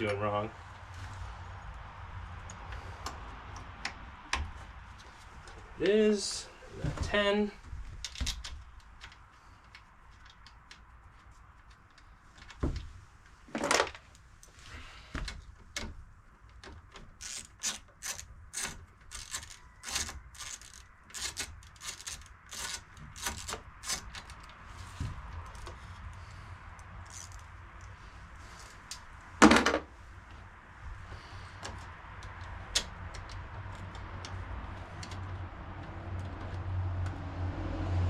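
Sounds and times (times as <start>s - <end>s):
scraping and clicking of plastic part: 15.2s - 29.1s.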